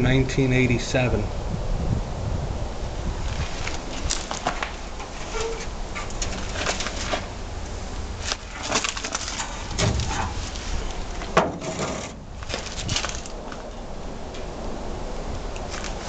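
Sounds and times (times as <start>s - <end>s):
crunching and cracking wood: 3.3s - 7.5s, 8.2s - 13.8s.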